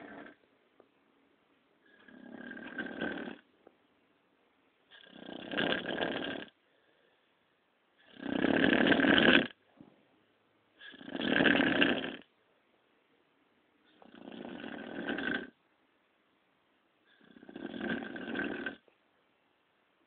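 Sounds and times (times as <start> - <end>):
man snoring: 0.0 - 0.4, 1.9 - 3.4, 5.0 - 6.6, 8.0 - 9.6, 10.8 - 12.3, 14.0 - 15.6, 17.2 - 18.8
quiet breaths: 0.0 - 19.6.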